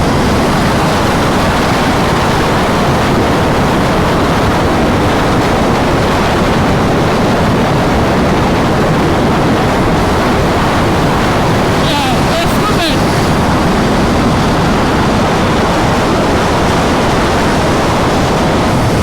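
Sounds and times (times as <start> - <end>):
wind roaring over microphone: 0.0 - 19.0.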